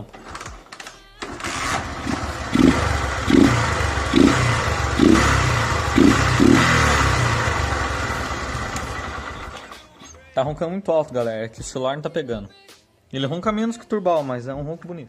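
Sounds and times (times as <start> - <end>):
motorcycle engine revving: 1.2 - 9.7.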